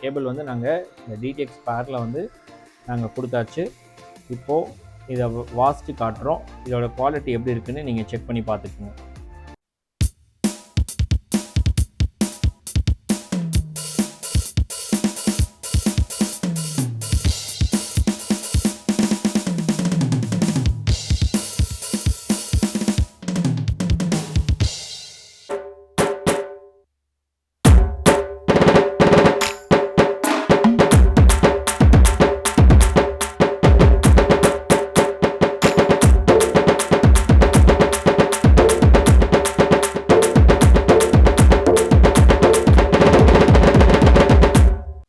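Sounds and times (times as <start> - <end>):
electronic drum beat: 10.0 - 26.6, 27.7 - 45.0
heavy bass drum strokes: 19.2 - 25.1, 27.7 - 45.0
tom fills: 27.7 - 45.0.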